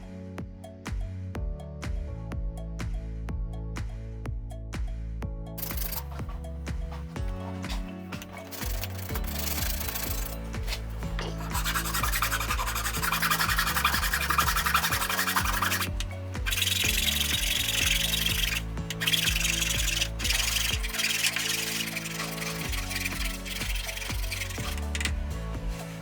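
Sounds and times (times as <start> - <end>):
background music with low notes: 0.0 - 26.0
abrasive sanding rasp: 6.9 - 25.5.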